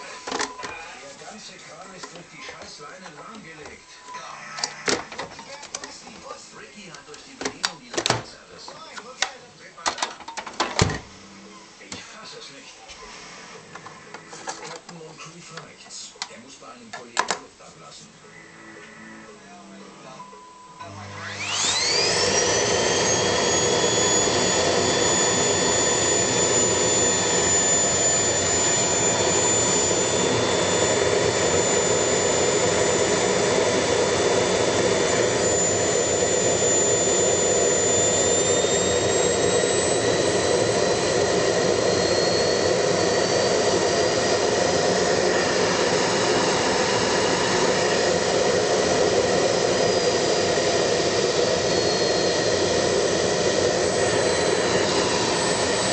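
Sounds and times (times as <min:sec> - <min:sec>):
vacuum cleaner motor whining: 0:00.0 - 0:09.4, 0:10.6 - 0:16.4, 0:18.3 - 0:55.9.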